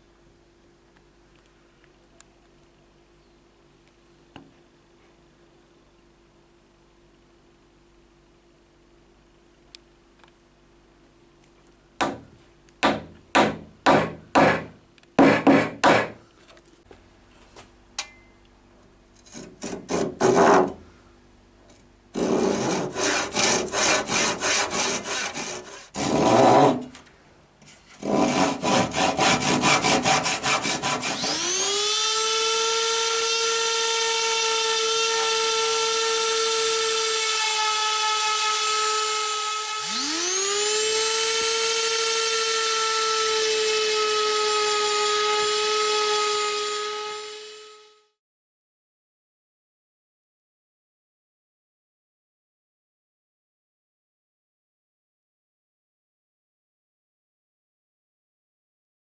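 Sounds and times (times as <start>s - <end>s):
hand saw cutting wood: 12.8s - 16.2s, 19.2s - 20.8s, 22.2s - 47.2s
electric power tool motor: 22.2s - 27.0s, 28.0s - 48.0s.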